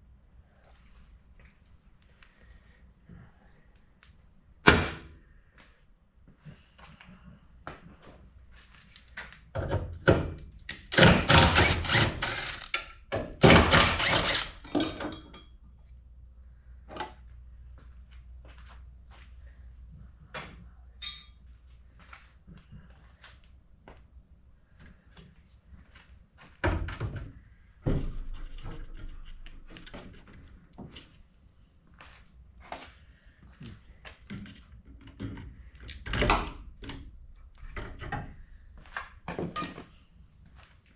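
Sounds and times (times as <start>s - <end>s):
faint low hum: 15.3s - 39.3s.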